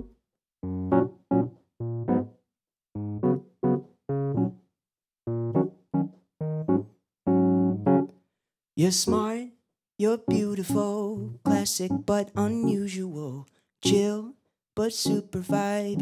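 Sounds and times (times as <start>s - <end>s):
electric keyboard chords: 0.0s - 2.4s, 3.0s - 4.6s, 5.3s - 8.1s, 8.9s - 9.4s, 10.0s - 13.1s, 13.8s - 14.2s, 15.0s - 16.0s.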